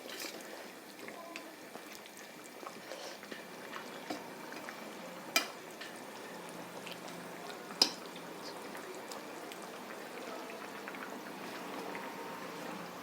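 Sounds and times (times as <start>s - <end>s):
pot bubbling while stirred: 0.0s - 13.0s.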